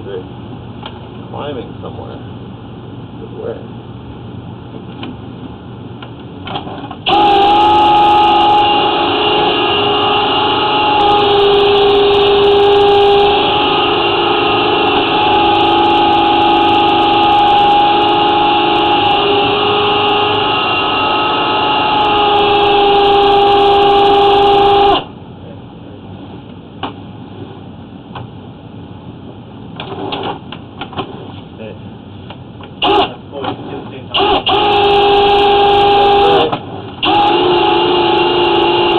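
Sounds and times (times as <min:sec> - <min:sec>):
drain-cleaning machine motor running: 0:07.1 - 0:25.1, 0:34.1 - 0:38.9.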